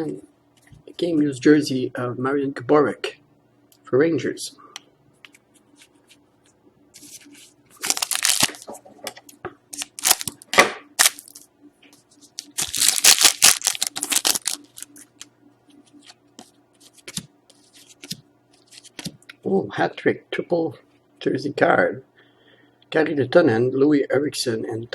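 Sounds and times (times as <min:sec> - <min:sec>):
wrapper tearing and crinkling: 0:07.8 - 0:08.7, 0:09.8 - 0:10.4, 0:11.0 - 0:11.4, 0:12.4 - 0:15.2.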